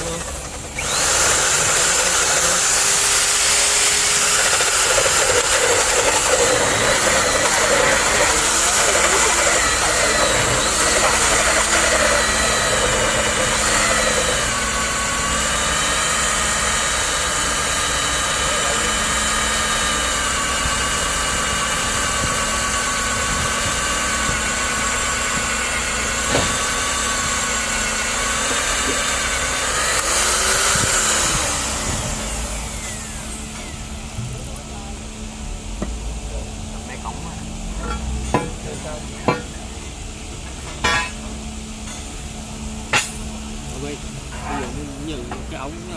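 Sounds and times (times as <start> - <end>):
drill motor whining: 0.0 - 36.3.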